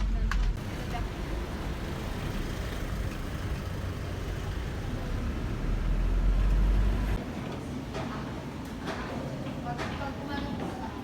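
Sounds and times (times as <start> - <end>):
vehicle interior rumble: 0.2 - 7.2.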